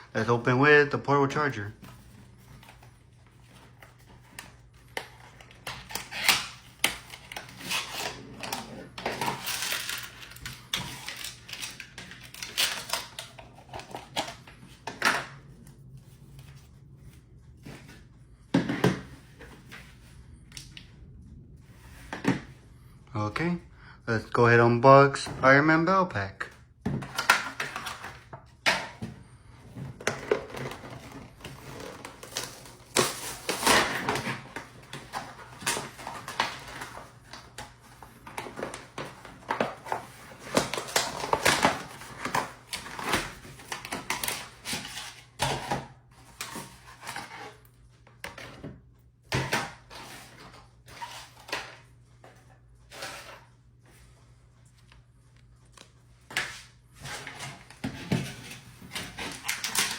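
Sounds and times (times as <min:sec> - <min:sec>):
packaging crinkling and tearing: 0:02.3 - 0:14.9, 0:30.1 - 0:45.6.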